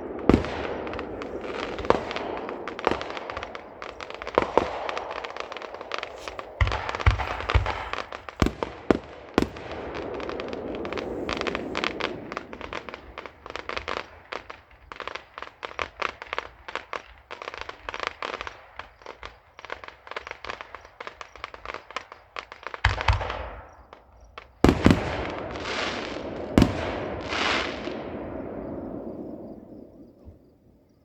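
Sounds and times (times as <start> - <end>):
fireworks shells bursting: 0.0 - 19.4
hissing crackle: 0.0 - 30.2
fireworks crackling pops: 0.0 - 30.5.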